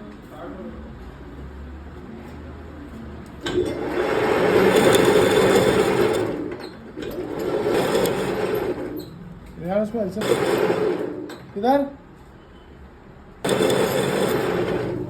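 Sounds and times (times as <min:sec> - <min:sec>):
machine tool motor running: 0:03.5 - 0:09.2, 0:10.0 - 0:11.6, 0:13.4 - 0:15.0.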